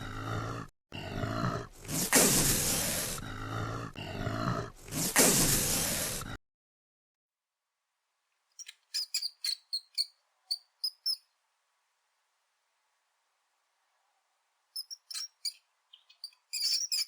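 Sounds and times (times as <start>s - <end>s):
small animal squeaking: 8.6s - 11.3s, 14.8s - 17.0s.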